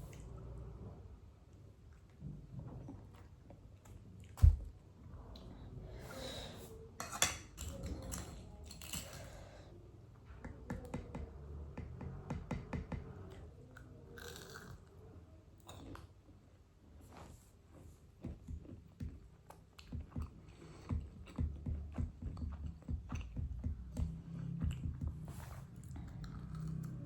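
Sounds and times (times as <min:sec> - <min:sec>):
chewing and biting: 0:18.4 - 0:27.0.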